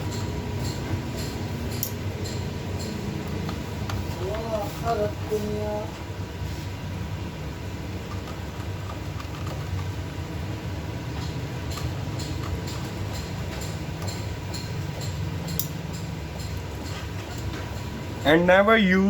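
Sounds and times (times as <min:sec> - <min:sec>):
steady low hum: 0:00.0 - 0:19.0
small tool clicks and taps: 0:00.1 - 0:04.0, 0:11.2 - 0:17.6.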